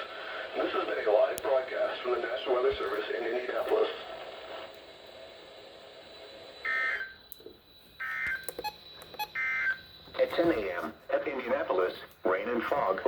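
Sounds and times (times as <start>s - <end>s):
warbling digital data squawks: 6.6s - 7.3s, 8.0s - 10.8s.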